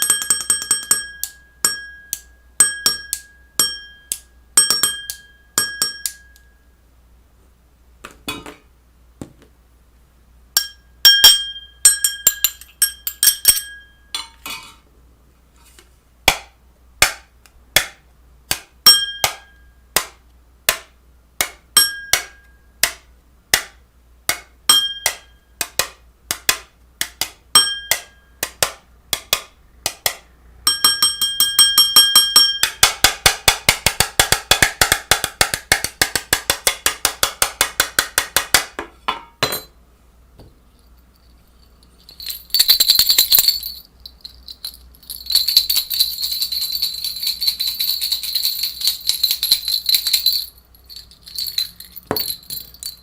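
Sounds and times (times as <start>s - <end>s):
sharp clinks and knocks: 0.0s - 6.5s, 10.6s - 14.8s, 39.0s - 39.8s, 40.4s - 53.0s.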